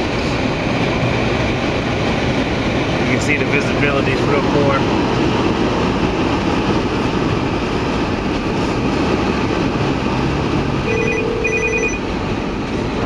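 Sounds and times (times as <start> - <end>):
car road and engine noise: 0.0 - 13.0
phone ringtone beeps: 10.9 - 12.0.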